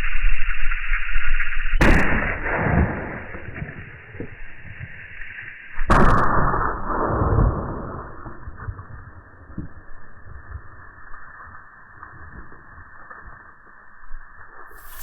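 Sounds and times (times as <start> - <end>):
pistol shots with ringing tail: 1.8 - 3.0.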